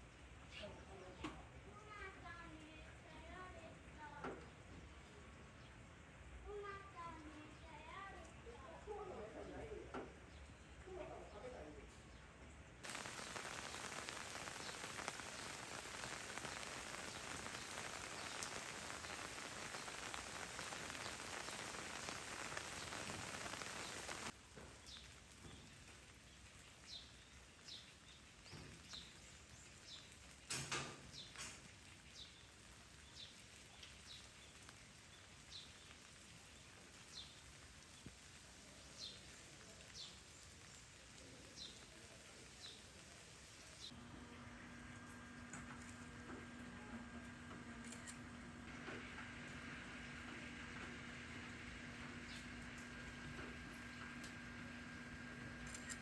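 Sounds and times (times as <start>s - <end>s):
heavy rain hissing: 12.8s - 56.0s.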